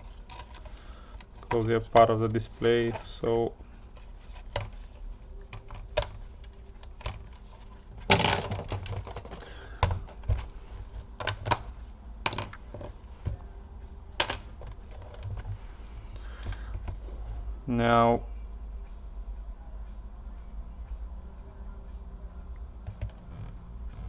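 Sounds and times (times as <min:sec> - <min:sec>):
hands clicking on plastic casing: 0:05.5 - 0:07.4, 0:08.0 - 0:13.4, 0:14.2 - 0:15.6.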